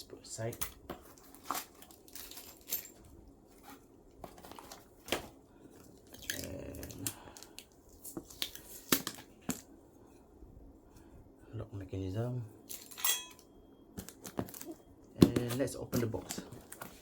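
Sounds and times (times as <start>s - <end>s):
packaging rustling: 14.0s - 14.8s, 15.4s - 17.0s.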